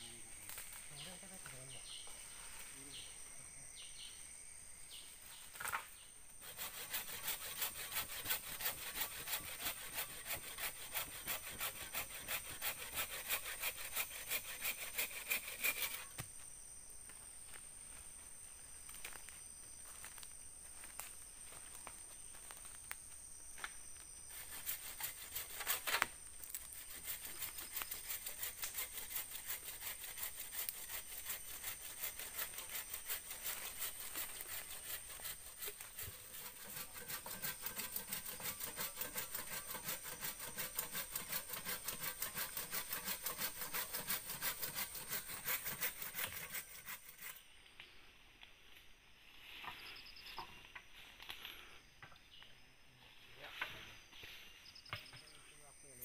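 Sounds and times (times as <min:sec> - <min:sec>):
hand saw cutting wood: 0:06.4 - 0:16.2, 0:24.3 - 0:47.4.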